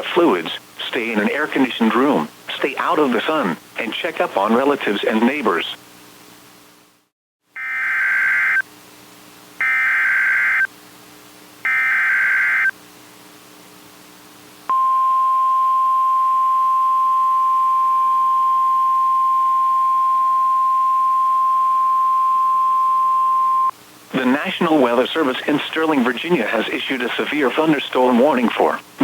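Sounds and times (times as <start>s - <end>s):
steady warning alarm tone: 7.6s - 8.6s, 9.6s - 10.7s, 11.7s - 12.7s, 14.7s - 23.7s.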